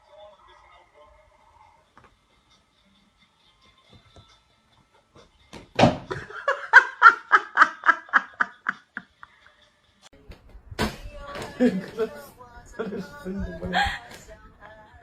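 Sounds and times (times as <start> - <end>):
person laughing: 6.1 - 9.3, 11.4 - 14.4.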